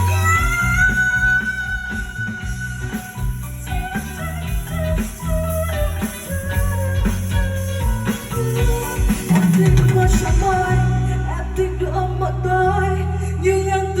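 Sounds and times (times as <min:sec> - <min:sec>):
band playing instrumental pop: 0:00.0 - 0:12.5.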